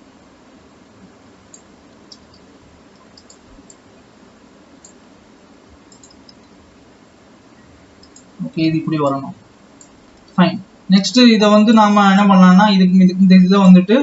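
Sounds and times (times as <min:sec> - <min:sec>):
microphone hiss: 0:00.0 - 0:14.0
mouse and keyboard clicks: 0:01.5 - 0:03.8, 0:05.9 - 0:06.6, 0:08.0 - 0:08.3.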